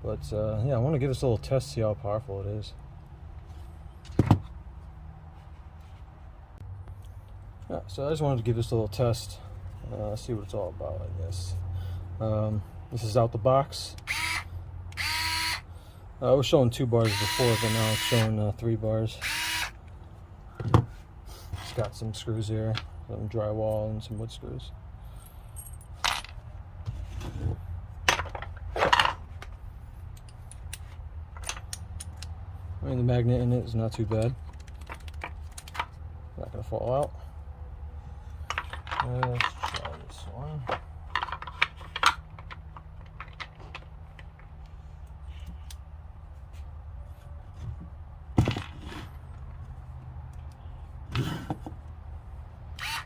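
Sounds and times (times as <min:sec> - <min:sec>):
screwdriver clicks and ticks: 0:14.0 - 0:15.6.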